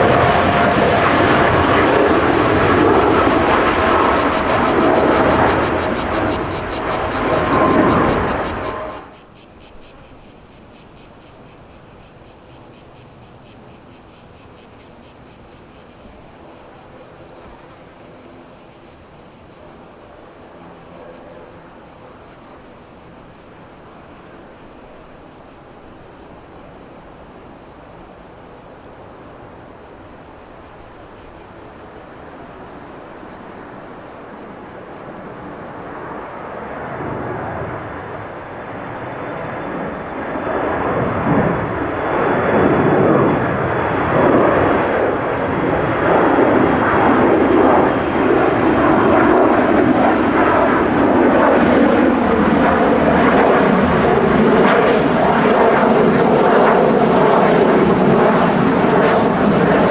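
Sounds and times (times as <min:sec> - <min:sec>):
low aircraft rumble: 0:00.0 - 0:09.1, 0:36.7 - 0:59.9
insect chorus buzzing: 0:00.0 - 0:59.9.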